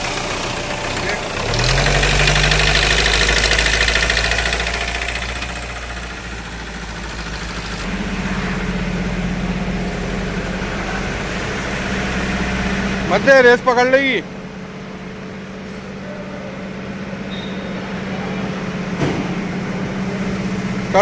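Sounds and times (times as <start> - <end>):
rattling knock inside engine: 0.0 - 8.6
diesel engine revving and idling: 0.0 - 16.0, 17.9 - 21.0.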